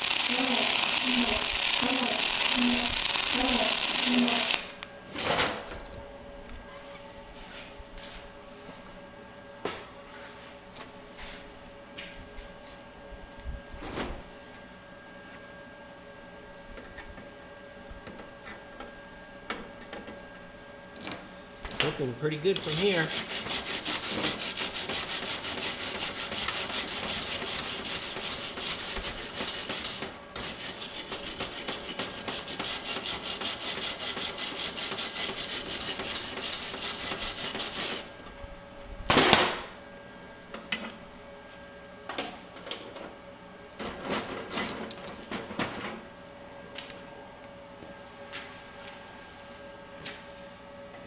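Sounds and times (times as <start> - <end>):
welding arc crackling hiss: 0.0 - 4.8.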